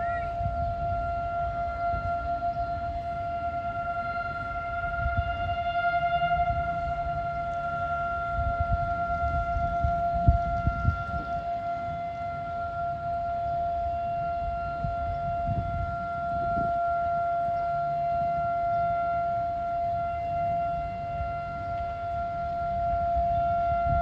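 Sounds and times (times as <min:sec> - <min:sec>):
low rumbling noise: 0:00.0 - 0:17.3
warning siren steady tone: 0:00.0 - 0:24.0.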